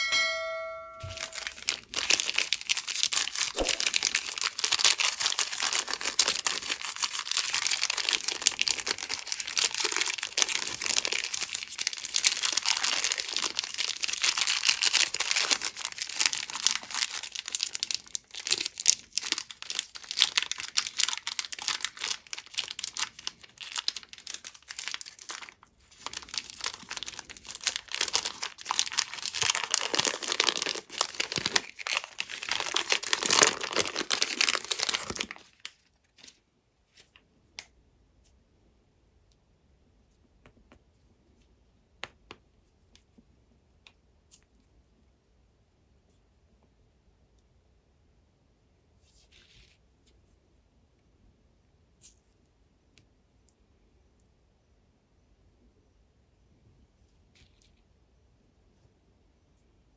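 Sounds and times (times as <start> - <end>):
wrappers crinkling and tearing: 1.2 - 36.4.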